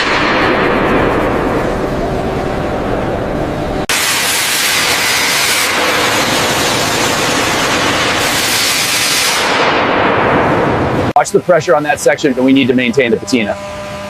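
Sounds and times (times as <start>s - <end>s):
low rumble: 0.0s - 4.1s
high-pressure blast hiss: 3.9s - 9.8s.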